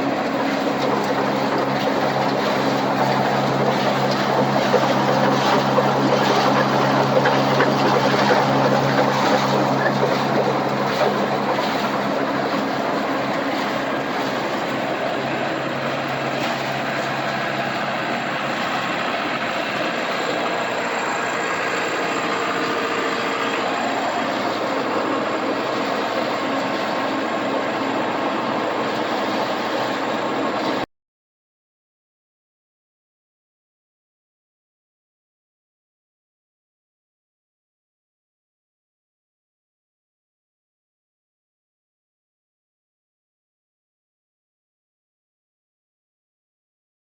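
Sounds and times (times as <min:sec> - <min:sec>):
farm machinery mechanical rush: 0:00.0 - 0:30.8
engine hum: 0:00.0 - 0:30.9.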